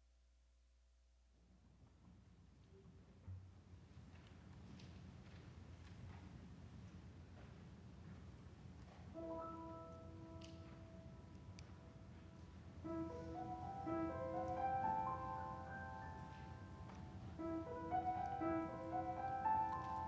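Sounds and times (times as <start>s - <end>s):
piano broken chords: 12.8s - 20.0s.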